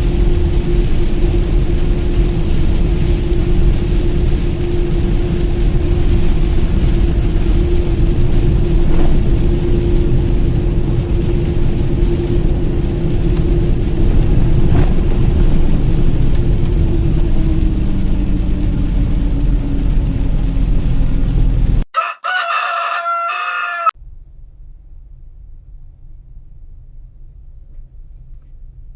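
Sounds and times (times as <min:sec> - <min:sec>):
truck engine and road drone: 0:00.0 - 0:21.9, 0:24.0 - 0:28.9
rooster crowing: 0:21.9 - 0:24.0.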